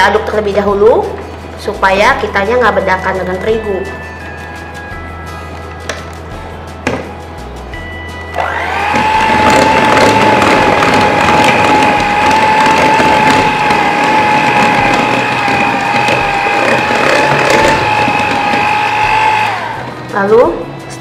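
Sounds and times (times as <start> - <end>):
electric hand mixer whine: 8.3 - 20.1.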